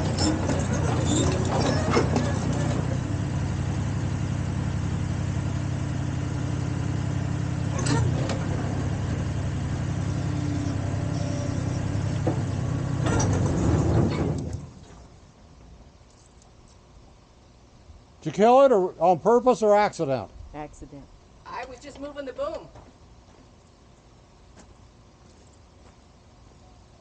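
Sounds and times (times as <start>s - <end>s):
diesel engine running and stalling: 0.0s - 14.8s.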